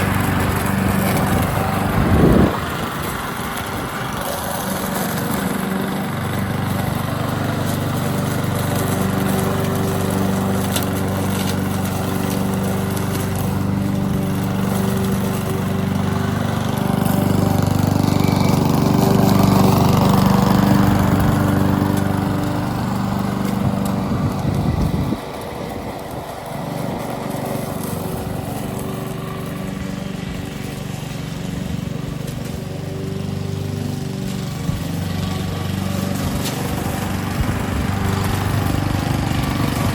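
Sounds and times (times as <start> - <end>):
lawn mower engine running: 0.0 - 39.9.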